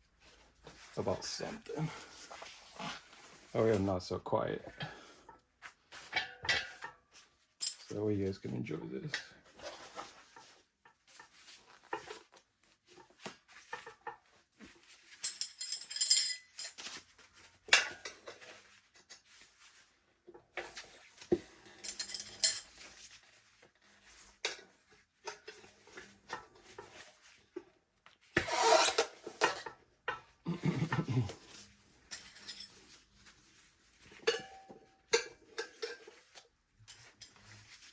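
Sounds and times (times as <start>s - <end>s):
rubber rubbing on metal: 28.4s - 29.2s.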